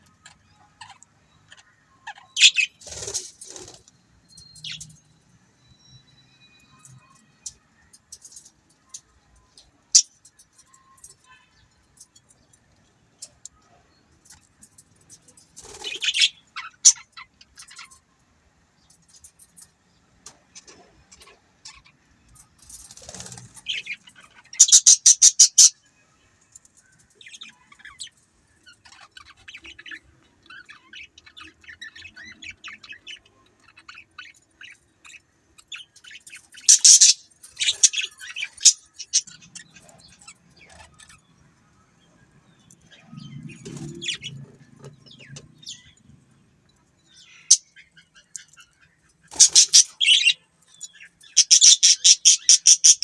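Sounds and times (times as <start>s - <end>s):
budgerigars chirping: 0.2s - 3.8s, 15.6s - 17.9s, 23.0s - 25.8s, 28.9s - 41.3s, 47.1s - 48.6s, 49.3s - 53.0s.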